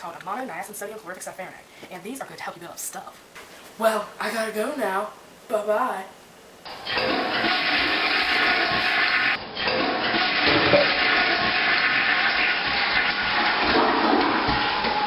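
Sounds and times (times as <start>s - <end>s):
water rushing: 6.7s - 15.0s.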